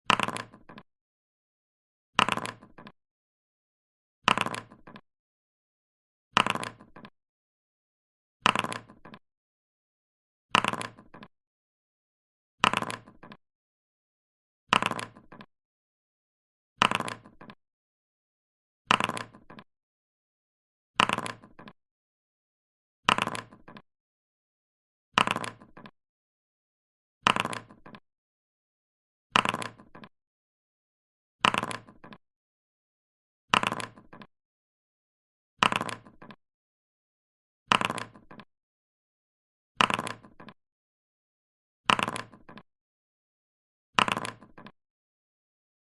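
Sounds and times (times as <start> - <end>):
dice clattering: 0.1 - 0.8, 2.2 - 2.9, 4.3 - 5.0, 8.5 - 9.2, 12.6 - 13.4, 16.8 - 17.5, 19.0 - 19.6, 25.2 - 25.7, 27.3 - 28.0, 29.4 - 29.9, 33.6 - 34.2, 35.6 - 36.2, 37.7 - 38.4, 39.8 - 40.6, 41.9 - 42.6, 44.0 - 44.7.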